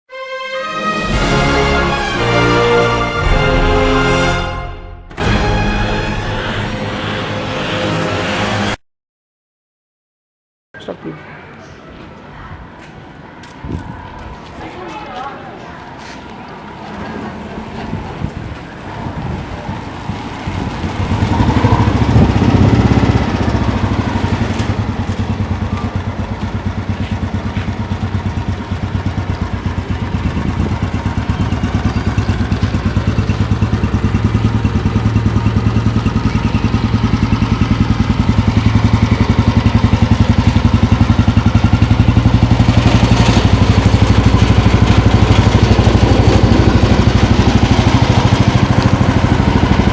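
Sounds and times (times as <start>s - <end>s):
motorcycle engine starting and idling: 16.5s - 49.9s.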